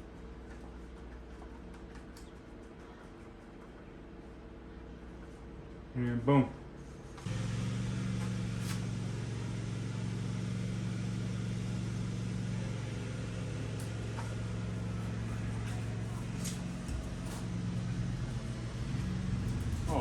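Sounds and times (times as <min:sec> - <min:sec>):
air compressor humming: 0:06.8 - 0:20.0.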